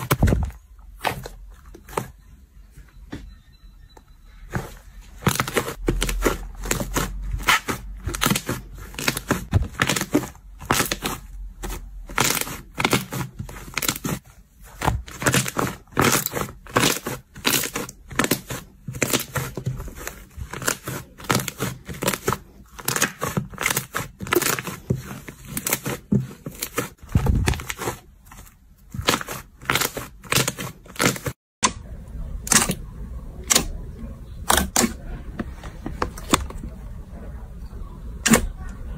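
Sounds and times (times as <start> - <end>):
slime crackling and popping: 5.2 - 14.2, 14.8 - 28.0.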